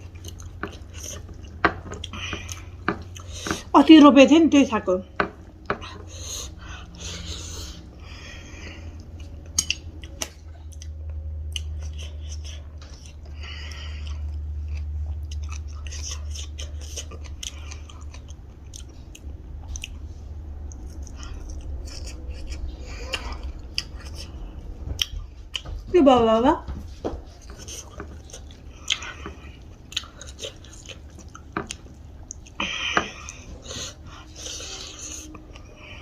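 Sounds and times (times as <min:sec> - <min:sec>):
close-up chewing: 0:00.0 - 0:03.8, 0:08.8 - 0:25.9, 0:27.2 - 0:36.0
steady low hum: 0:00.0 - 0:36.0.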